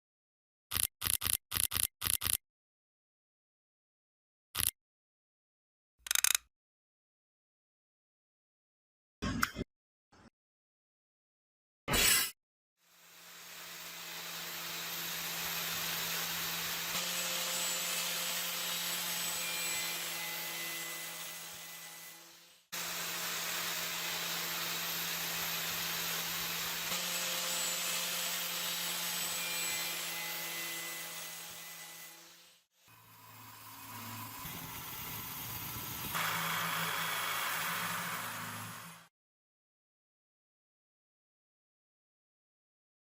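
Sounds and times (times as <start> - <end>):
electric power tool grinding: 12.9 - 39.1.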